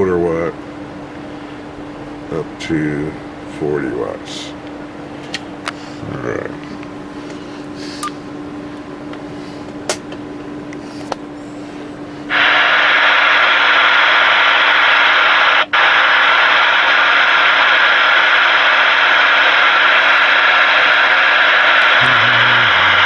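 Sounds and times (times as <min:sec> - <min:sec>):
faint radio hum: 0:10.8 - 0:23.0
radio static hiss: 0:12.3 - 0:23.0.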